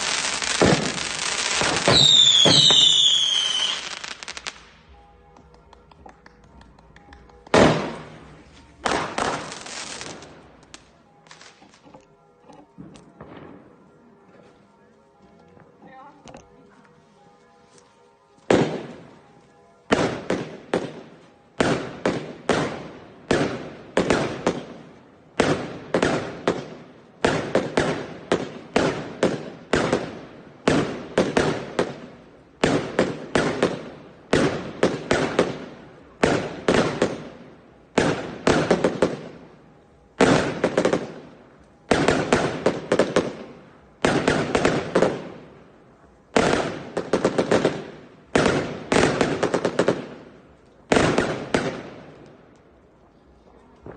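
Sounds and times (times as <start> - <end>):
fireworks bangs and crackles: 0.0 - 5.0, 6.9 - 11.8, 19.9 - 39.6, 40.2 - 52.6.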